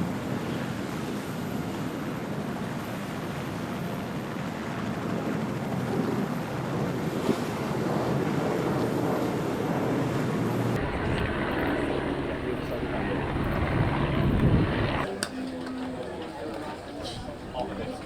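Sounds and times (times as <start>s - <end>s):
rushing sea water: 0.0s - 15.1s
wind buffeting microphone: 9.0s - 15.1s
faint low hum: 10.8s - 15.1s.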